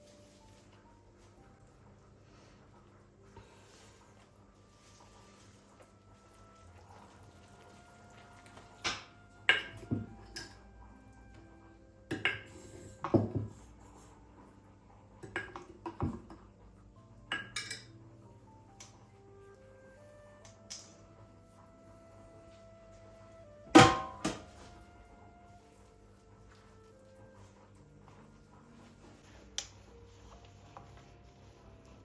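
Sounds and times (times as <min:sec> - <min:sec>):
dishes and utensils clinking: 0:08.5 - 0:10.8, 0:12.1 - 0:13.6, 0:15.2 - 0:16.5, 0:17.2 - 0:18.0, 0:23.7 - 0:24.7.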